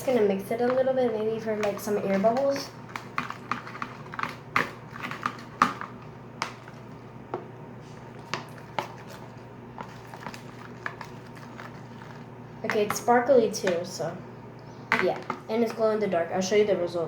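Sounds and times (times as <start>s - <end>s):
knife stirring glue in a bowl: 0.0s - 13.8s.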